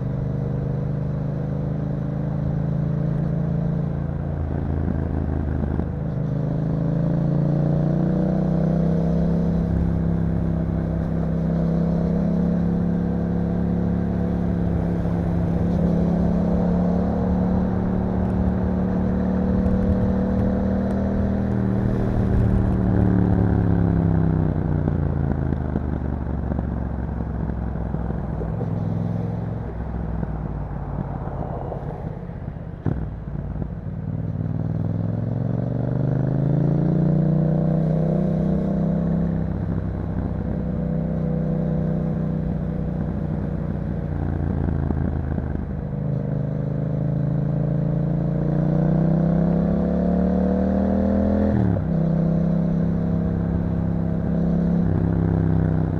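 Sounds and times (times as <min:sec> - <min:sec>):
motorcycle engine revving: 0:01.6 - 0:55.9.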